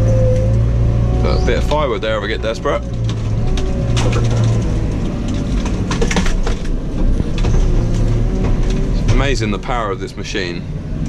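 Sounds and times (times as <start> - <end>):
diesel engine working hard: 0.0 - 11.0
hydraulics whining: 0.0 - 11.0
wood and branches cracking: 2.2 - 9.4.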